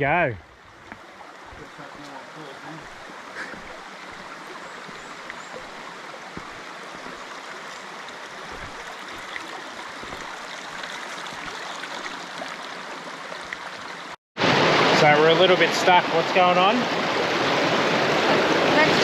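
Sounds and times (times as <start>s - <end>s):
creek water running over rocks: 0.0s - 19.0s.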